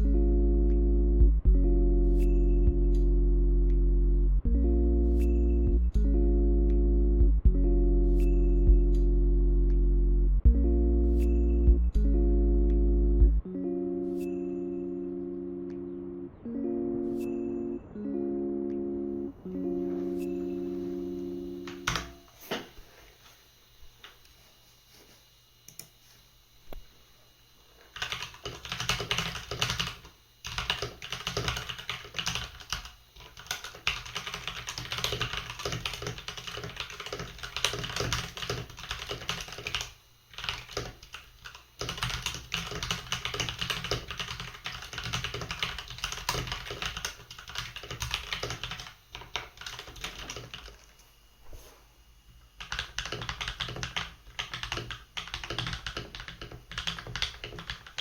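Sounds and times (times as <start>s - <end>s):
fast typing on mechanical keyboard: 28.0s - 50.9s, 52.6s - 58.0s.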